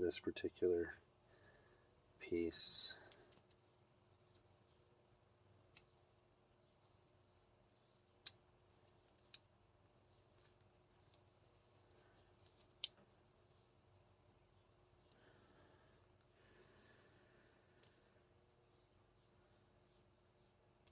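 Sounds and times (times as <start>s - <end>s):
faint steady hum: 0.0s - 20.9s
sharp clicks of small parts: 11.9s - 13.0s.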